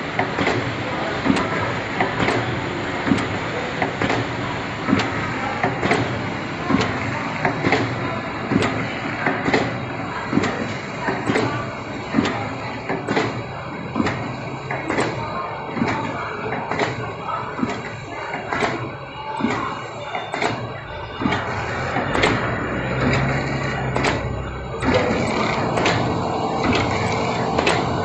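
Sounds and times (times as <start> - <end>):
filling machine knocking: 0.0 - 28.0
steady mechanical noise: 0.0 - 28.0.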